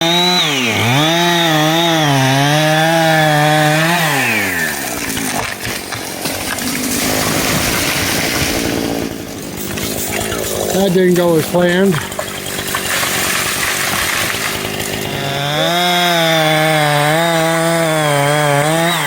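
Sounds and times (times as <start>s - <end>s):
chainsaw running at high revs: 0.0s - 19.0s
rough noisy sound: 3.3s - 16.2s.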